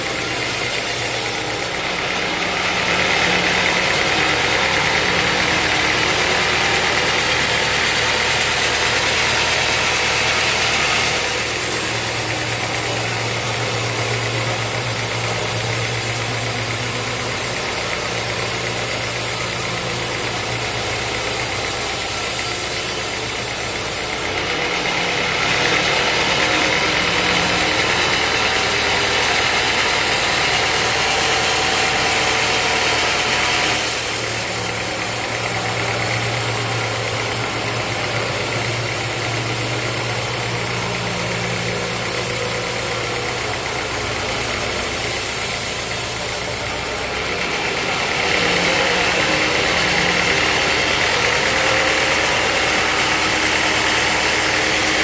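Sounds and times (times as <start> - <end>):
sawmill machinery drone: 0.0 - 55.0.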